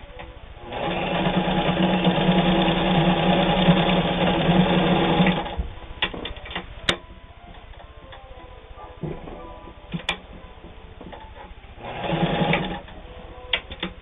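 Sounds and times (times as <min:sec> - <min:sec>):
sewing machine running: 0:00.6 - 0:05.6, 0:11.8 - 0:13.0.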